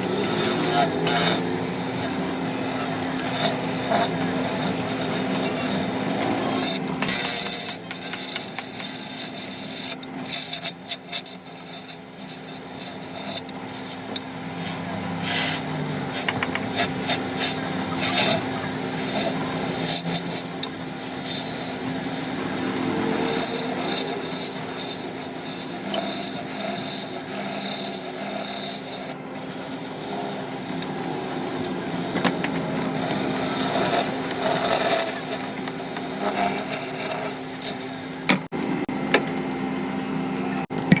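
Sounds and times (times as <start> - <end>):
scraping and rubbing wood: 0.0 - 30.1.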